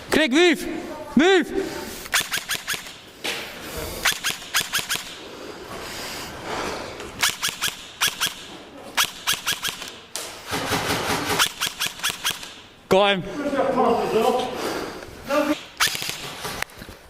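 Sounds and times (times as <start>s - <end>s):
airsoft guns firing: 7.2s - 12.7s, 15.6s - 16.4s.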